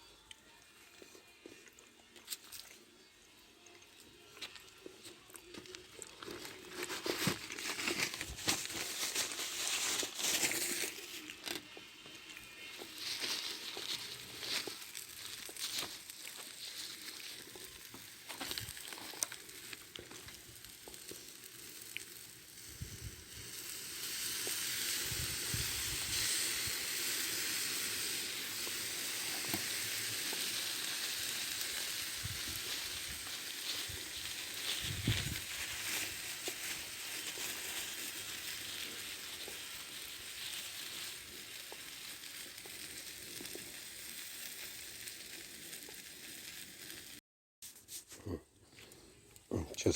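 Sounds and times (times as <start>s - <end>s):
food sizzling in a pan: 4.0s - 47.2s
rustling: 6.2s - 11.6s, 12.6s - 19.8s, 32.2s - 43.6s.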